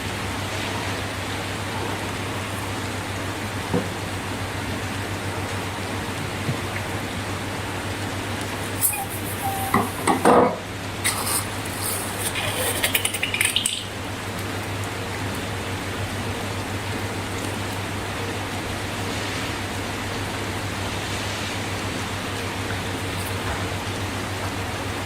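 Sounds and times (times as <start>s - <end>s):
background hiss: 8.4s - 10.3s.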